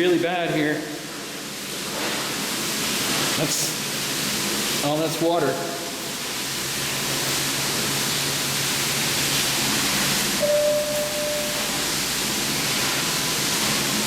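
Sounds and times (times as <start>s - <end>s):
water pouring and splashing: 1.0s - 14.0s
steady beep: 10.4s - 11.8s.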